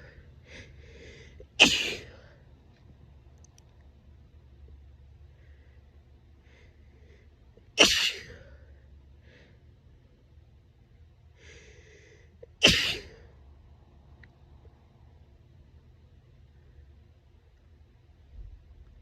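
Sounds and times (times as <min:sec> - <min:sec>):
woman sneezing: 0:01.6 - 0:02.1, 0:07.8 - 0:08.4, 0:12.6 - 0:13.2
breathy in-breath: 0:11.4 - 0:12.4.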